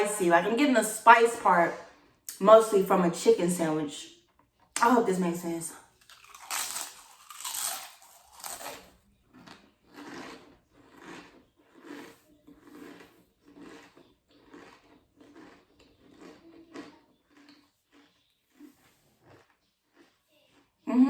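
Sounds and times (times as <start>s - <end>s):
crisps crunching and chewing: 5.9s - 20.9s.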